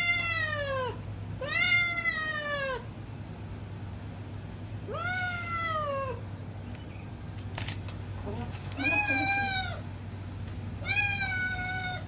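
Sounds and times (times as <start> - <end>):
cat meowing: 0.0 - 2.9, 4.9 - 6.2, 8.8 - 9.8, 10.8 - 12.0.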